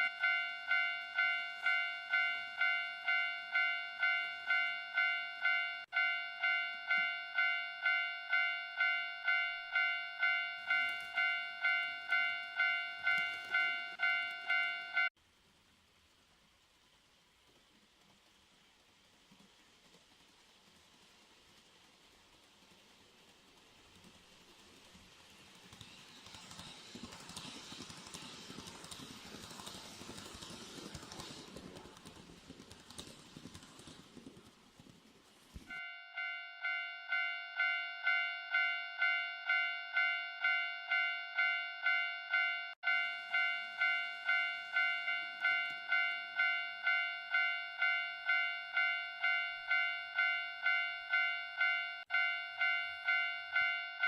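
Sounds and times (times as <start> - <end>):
level-crossing warning bell: 0.0 - 15.2, 35.7 - 54.0
model train wheels clicking: 9.3 - 14.8, 15.6 - 35.8
low rolling hiss: 15.2 - 35.7.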